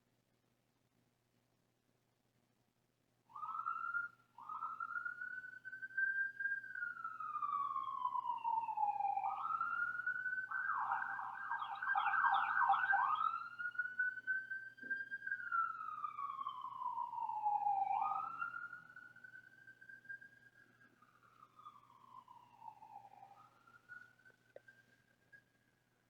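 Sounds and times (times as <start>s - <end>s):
emergency vehicle siren: 3.3s - 24.7s.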